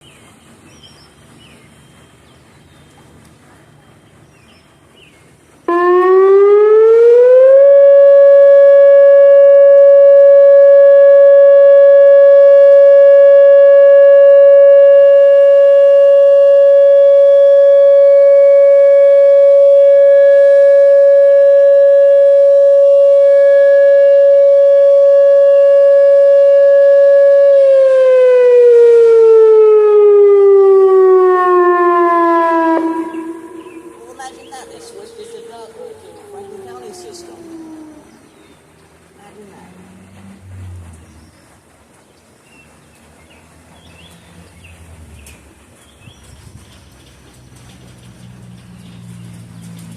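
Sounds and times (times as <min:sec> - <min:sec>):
outdoor warning siren steady tone: 0:05.7 - 0:38.6.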